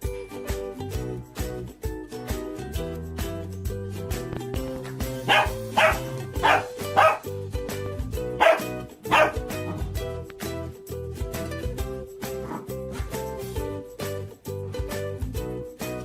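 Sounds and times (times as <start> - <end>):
background music: 0.0 - 16.0
dog barking: 5.2 - 7.3, 8.4 - 9.4, 12.4 - 12.8.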